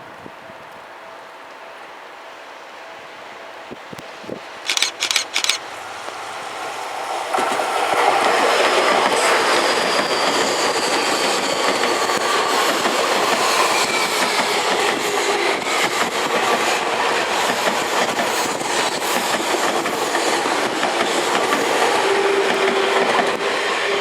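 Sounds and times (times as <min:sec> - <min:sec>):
train wheels roaring on rail: 0:00.0 - 0:24.0
clickety-clack over rail joints: 0:07.3 - 0:23.5.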